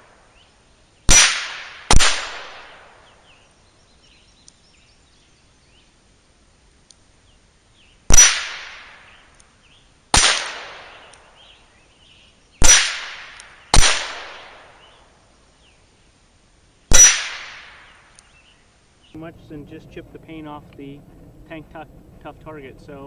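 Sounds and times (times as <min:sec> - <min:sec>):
handgun shots: 0:01.1 - 0:03.0, 0:08.1 - 0:09.0, 0:10.2 - 0:11.3, 0:12.6 - 0:14.7, 0:16.9 - 0:17.9.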